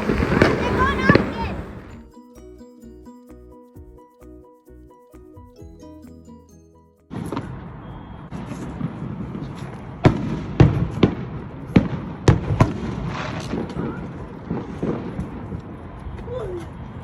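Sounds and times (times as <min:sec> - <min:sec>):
fireworks bangs and pops: 0:00.0 - 0:01.7, 0:07.2 - 0:16.3
outdoor hiss: 0:00.0 - 0:02.0.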